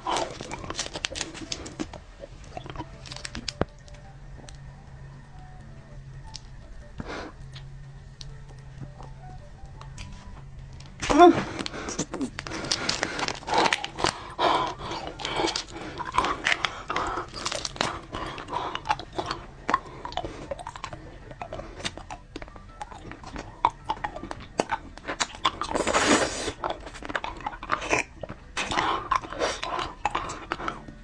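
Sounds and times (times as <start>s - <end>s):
chewing crunchy food: 0.0s - 4.6s, 11.5s - 31.0s.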